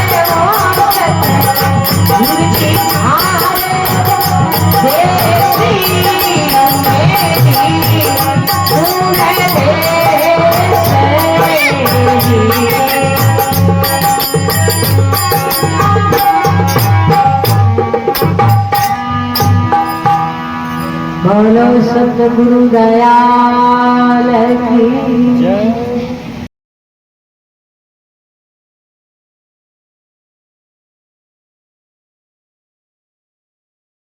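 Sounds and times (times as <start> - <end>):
hand drum beats: 0.0 - 21.0
small rattling percussion: 0.0 - 21.2
wavering melody: 0.0 - 22.9.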